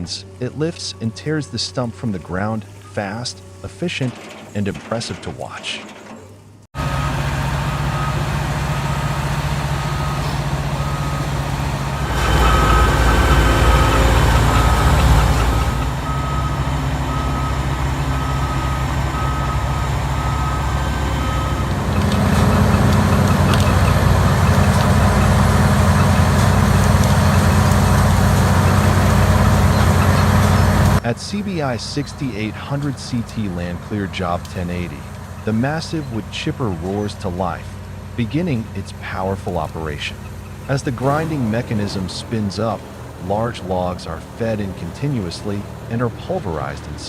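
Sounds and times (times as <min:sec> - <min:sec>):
heavy machine engine running: 0:00.0 - 0:47.0
reversing alarm beeping: 0:06.8 - 0:30.9.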